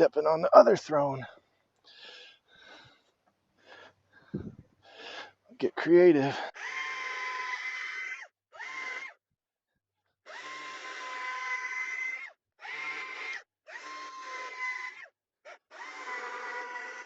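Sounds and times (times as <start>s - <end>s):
electric saw cutting wood: 10.3s - 15.0s, 15.6s - 17.0s.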